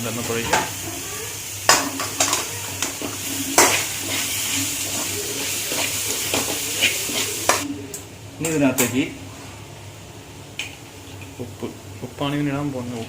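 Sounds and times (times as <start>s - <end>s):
masala sizzling in a pan: 0.0s - 7.7s
spatula scraping a pan: 1.7s - 7.6s.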